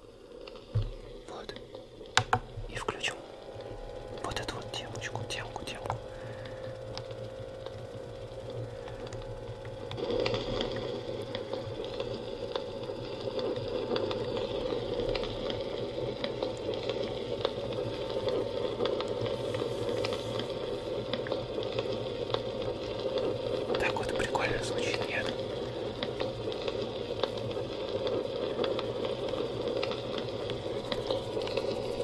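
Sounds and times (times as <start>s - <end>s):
campfire crackling from speaker: 0.0s - 32.0s.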